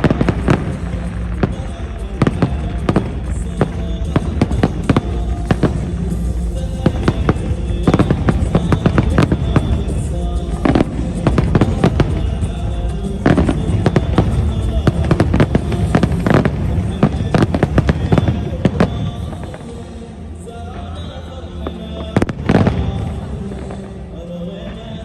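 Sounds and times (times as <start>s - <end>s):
fireworks bangs and pops: 0.0s - 19.8s
low rumble: 0.0s - 24.4s
music playing: 0.0s - 25.0s.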